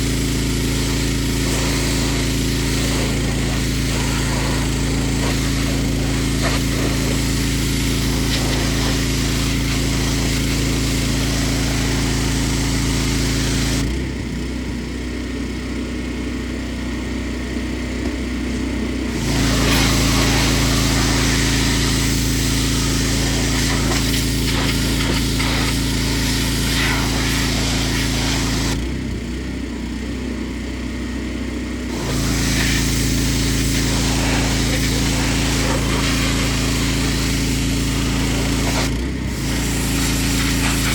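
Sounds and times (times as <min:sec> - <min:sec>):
hissing water spray: 0:00.0 - 0:13.8, 0:19.1 - 0:28.8, 0:31.9 - 0:40.9
pressure washer engine running: 0:00.0 - 0:40.9.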